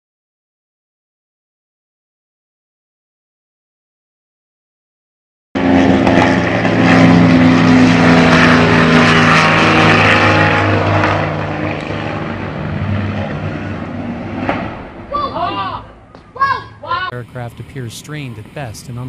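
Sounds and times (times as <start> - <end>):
propeller aircraft engine droning: 5.6 - 19.0.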